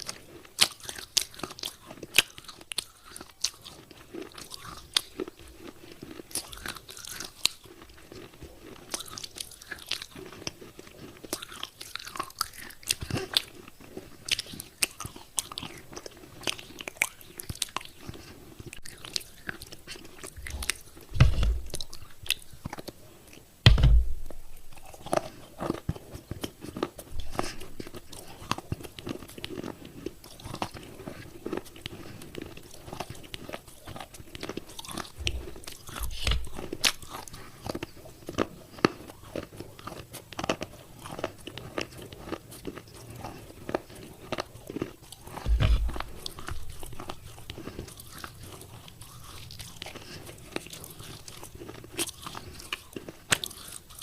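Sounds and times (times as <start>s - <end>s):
chewing crunchy clay: 0.0s - 54.0s
heavy low thumps: 21.2s - 21.8s, 23.6s - 24.8s, 45.5s - 46.8s.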